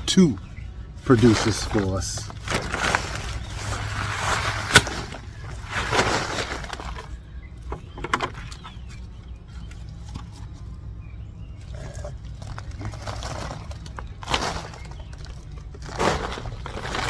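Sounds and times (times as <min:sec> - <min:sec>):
soil rustling and scraping: 0:00.2 - 0:07.6, 0:11.4 - 0:17.0.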